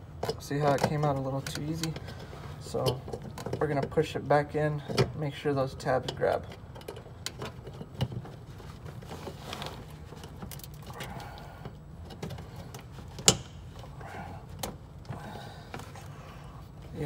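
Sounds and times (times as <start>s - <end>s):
handling rustle: 7.4s - 11.1s.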